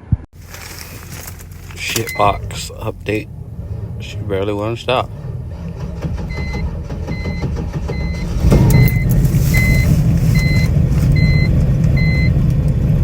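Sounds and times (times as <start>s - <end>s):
car engine starting and rumbling: 0.4s - 13.0s
car warning chime beeping: 1.4s - 5.2s, 6.1s - 12.4s.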